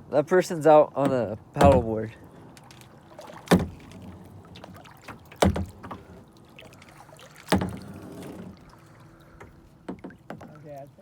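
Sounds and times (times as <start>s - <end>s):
faint water sound: 0.0s - 11.0s
paddle splashes: 1.0s - 11.0s.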